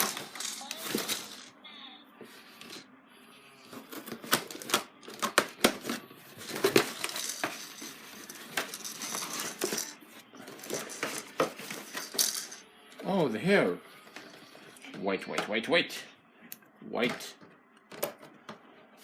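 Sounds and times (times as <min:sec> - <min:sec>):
plastic packaging clicks and rustling: 0:00.0 - 0:01.5, 0:03.7 - 0:12.4.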